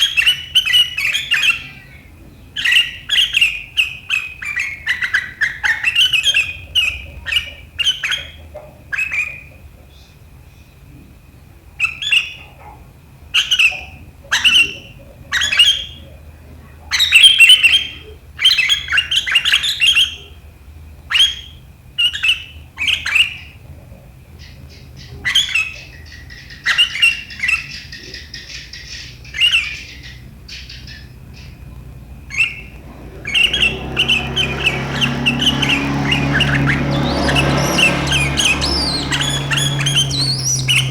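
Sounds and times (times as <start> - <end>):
bird calling sharp notes: 32.3 - 40.9
bird chattering scratchily: 32.4 - 40.9.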